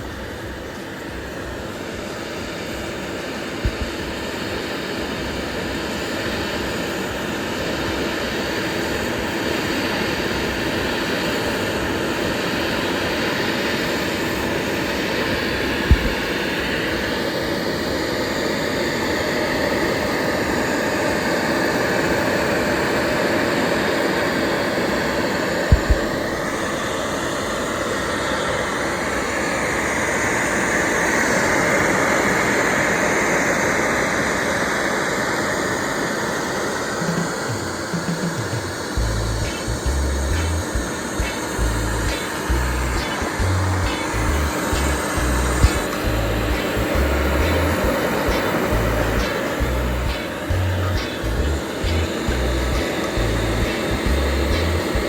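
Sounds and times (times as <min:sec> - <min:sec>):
low thumps: 0:25.7 - 0:26.1.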